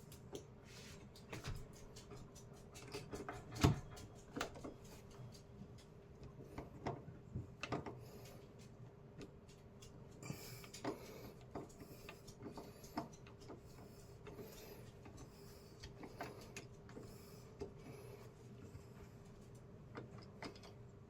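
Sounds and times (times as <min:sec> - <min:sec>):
faint steady hum: 0:00.0 - 0:21.0
small clicks and light knocks: 0:00.0 - 0:21.0.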